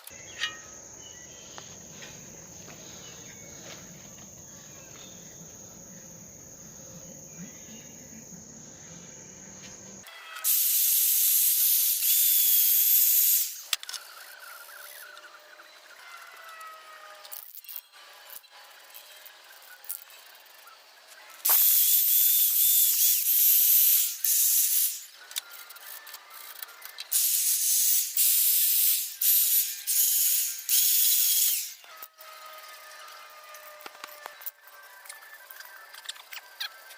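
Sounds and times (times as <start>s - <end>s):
aerosol spray can hissing: 10.4s - 13.7s, 21.5s - 24.9s.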